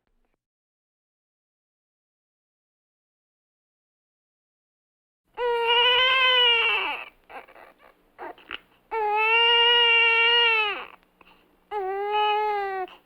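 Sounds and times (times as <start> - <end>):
infant crying: 5.4 - 11.0, 11.7 - 13.0
catching breaths: 11.2 - 11.6.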